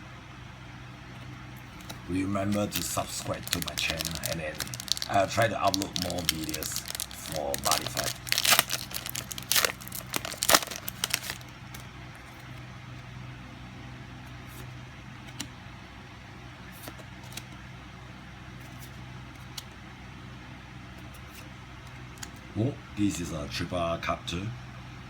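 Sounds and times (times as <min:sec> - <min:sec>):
steady low hum: 0:00.0 - 0:25.0
foil pack crinkling and tearing: 0:01.6 - 0:12.4.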